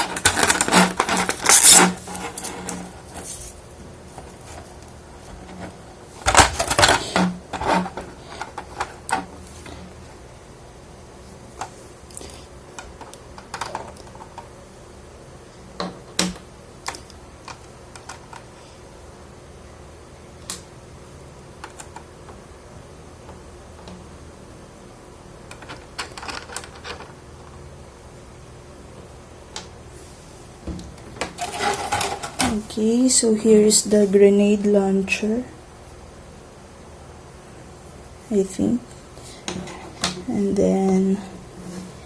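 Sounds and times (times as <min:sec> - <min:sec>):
plastic parts clicking and rattling: 0:00.0 - 0:02.9, 0:05.4 - 0:09.3, 0:25.5 - 0:27.1, 0:31.2 - 0:32.6.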